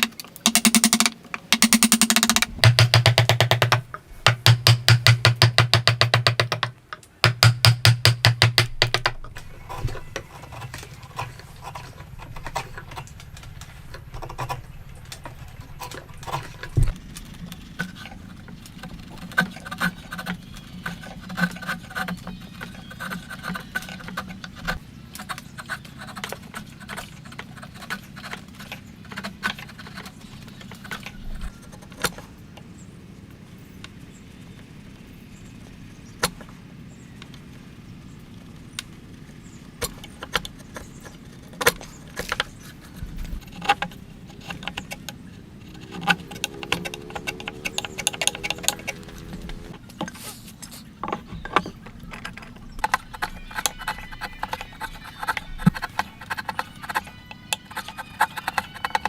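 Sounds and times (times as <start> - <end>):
irregular tapping and clicking: 0.0 - 9.3, 51.0 - 59.0
fast knocks on wood: 0.5 - 9.2.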